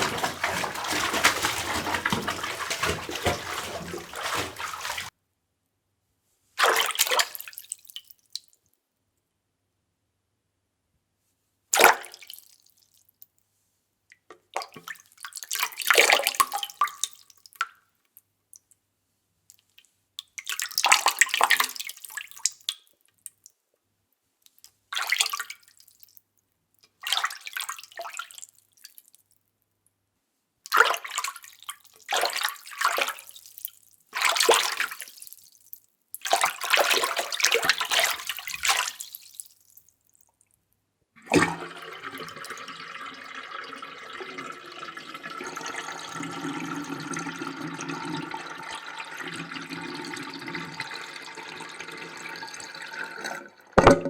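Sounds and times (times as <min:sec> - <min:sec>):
water splashing and dripping: 0:00.0 - 0:05.1, 0:34.2 - 0:35.4, 0:36.2 - 0:39.6, 0:41.2 - 0:46.2.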